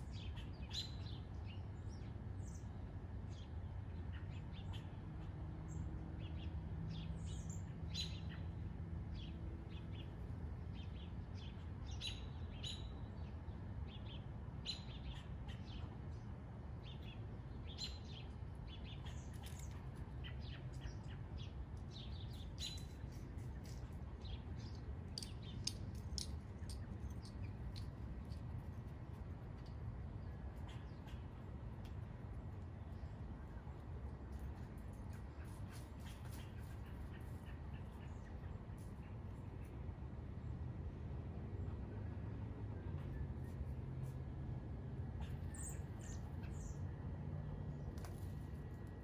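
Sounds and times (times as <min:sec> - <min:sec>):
small birds chirping: 0:09.2 - 0:32.0.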